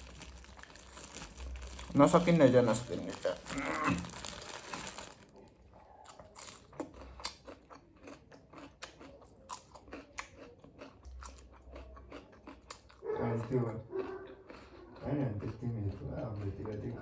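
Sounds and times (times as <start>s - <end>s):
small crunches and clicks: 0.0s - 12.9s
person chewing and biting: 0.0s - 17.0s.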